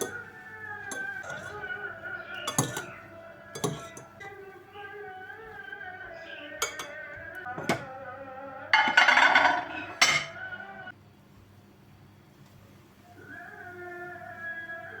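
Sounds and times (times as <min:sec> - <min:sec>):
dishes and utensils clinking: 0:00.0 - 0:04.5, 0:06.5 - 0:08.0, 0:08.7 - 0:10.9
soft background music: 0:00.0 - 0:11.0.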